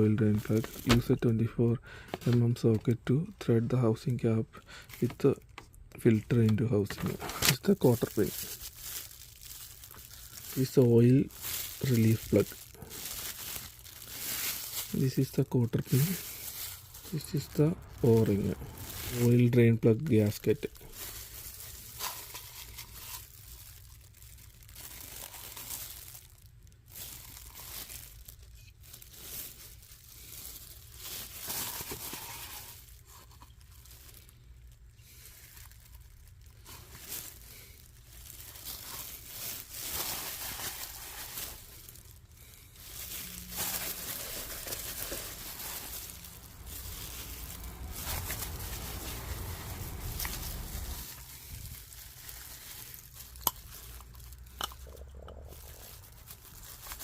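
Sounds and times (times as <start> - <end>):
plastic packaging crinkling: 0.0 - 57.0.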